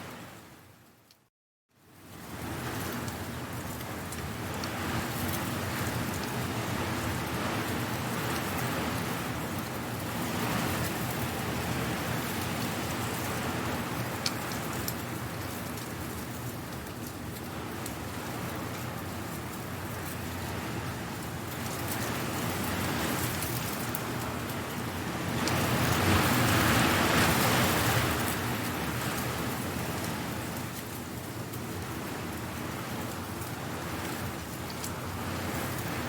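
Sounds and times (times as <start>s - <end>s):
wind through dry leaves: 0.0s - 1.2s, 1.8s - 36.0s
crackling ticks: 14.2s - 15.0s.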